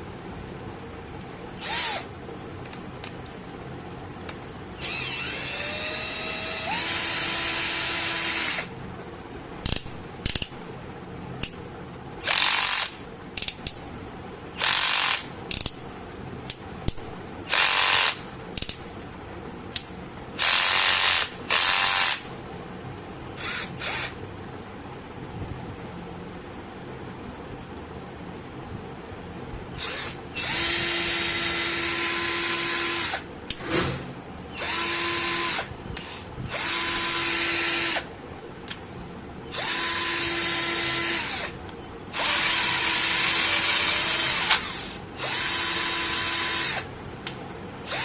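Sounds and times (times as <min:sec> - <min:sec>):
cordless drill whirring: 0:01.6 - 0:02.1, 0:04.8 - 0:08.7, 0:12.2 - 0:13.0, 0:14.6 - 0:15.7, 0:17.5 - 0:18.2, 0:20.4 - 0:22.2, 0:23.4 - 0:24.2, 0:29.8 - 0:33.3, 0:34.6 - 0:38.1, 0:39.5 - 0:46.9.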